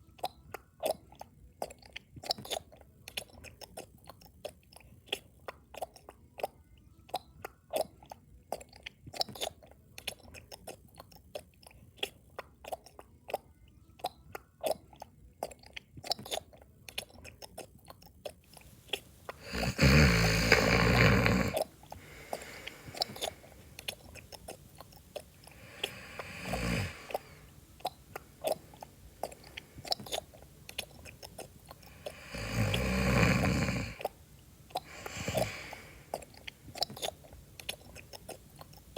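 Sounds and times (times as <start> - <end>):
wet chewing: 0.0 - 38.9
snoring: 19.3 - 23.6, 25.5 - 27.5, 31.8 - 34.1, 34.8 - 36.3.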